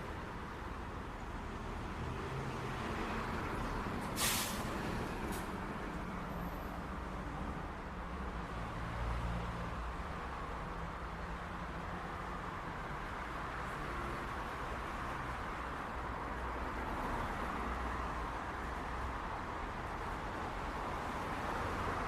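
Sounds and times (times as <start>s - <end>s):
sharp hiss of air: 4.1s - 4.8s.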